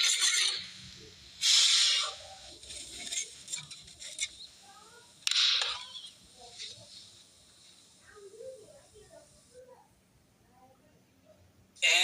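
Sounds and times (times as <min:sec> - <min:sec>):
loud hissing bursts: 0:01.3 - 0:02.6
faint chirps: 0:01.4 - 0:09.9.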